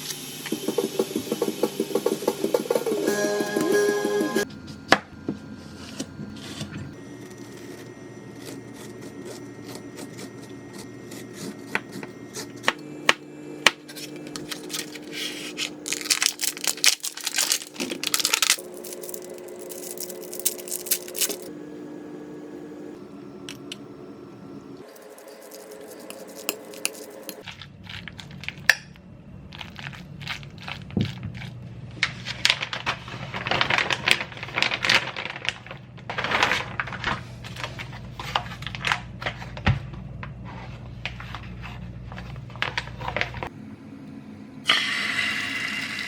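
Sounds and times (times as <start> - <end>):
steady low hum: 4.4 - 27.8
packaging crinkling and tearing: 13.9 - 21.5, 24.8 - 28.7, 29.5 - 39.6
utensils and dishes clicking: 15.8 - 21.5, 24.8 - 27.4.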